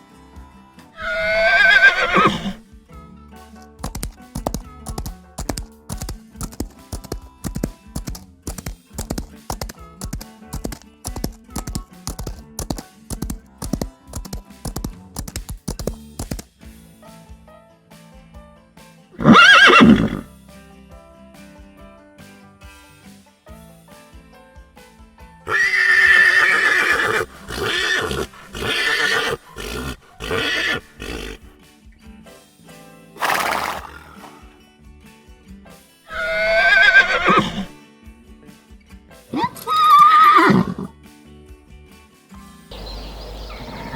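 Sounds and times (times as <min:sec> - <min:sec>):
faint background music: 0:00.0 - 0:43.9
horse hooves clip-clopping: 0:01.0 - 0:02.6, 0:03.8 - 0:16.5, 0:25.5 - 0:31.5, 0:33.2 - 0:34.5, 0:36.1 - 0:37.7
background music: 0:35.9 - 0:38.0.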